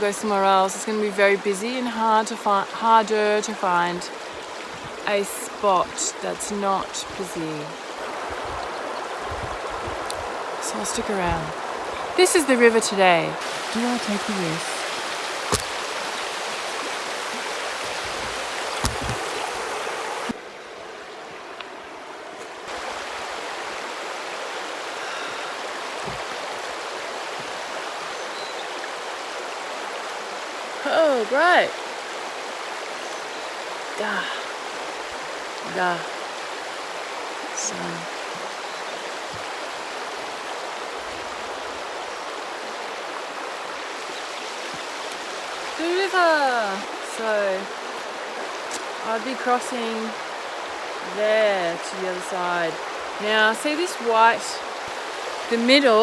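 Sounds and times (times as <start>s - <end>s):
river water rushing over rocks: 1.8s - 20.4s, 22.7s - 28.1s, 33.8s - 56.0s
sharp tap: 15.5s - 15.8s, 18.8s - 19.3s.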